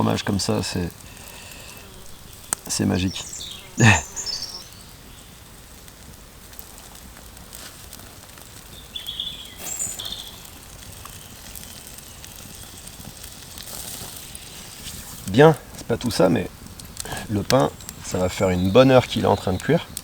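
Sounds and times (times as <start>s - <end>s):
faint clicks: 0.6s - 3.6s
short high bird chirps: 3.1s - 4.7s.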